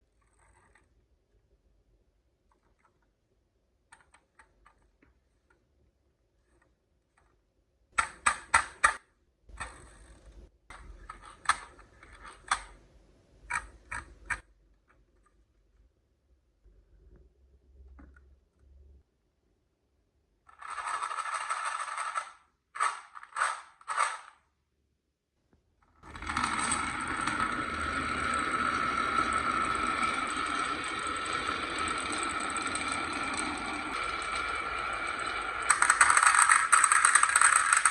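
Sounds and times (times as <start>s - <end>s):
marbles rolling on wooden track: 20.5s - 24.3s, 26.0s - 37.9s
marbles clacking: 26.0s - 37.9s.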